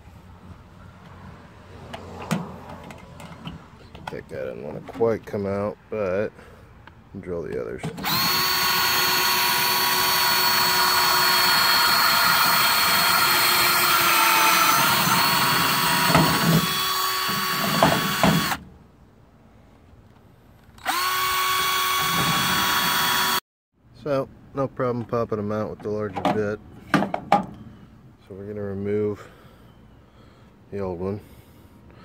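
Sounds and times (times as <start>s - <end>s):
electric drill drilling metal: 8.0s - 18.6s, 20.8s - 23.4s.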